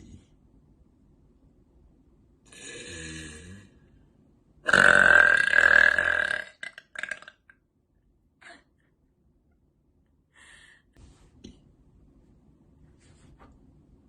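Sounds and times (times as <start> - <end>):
woman burping loudly: 4.6 - 7.5.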